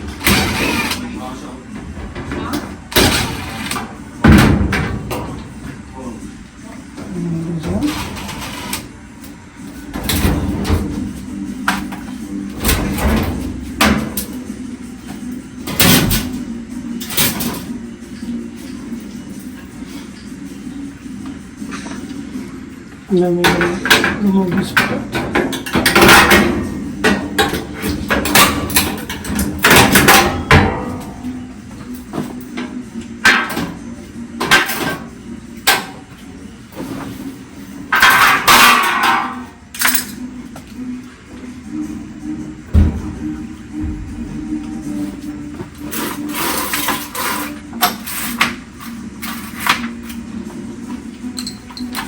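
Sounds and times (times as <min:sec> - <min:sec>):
taps and bangs on dryer parts: 0:04.2 - 0:05.4, 0:12.6 - 0:14.4, 0:15.6 - 0:16.4, 0:23.4 - 0:31.2.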